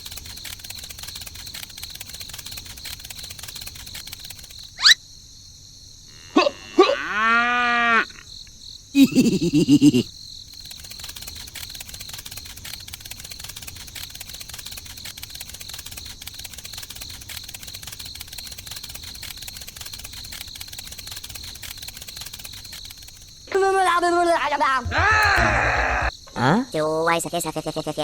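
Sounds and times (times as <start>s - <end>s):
engine running with even clatter: 0.0s - 4.6s, 10.6s - 23.5s.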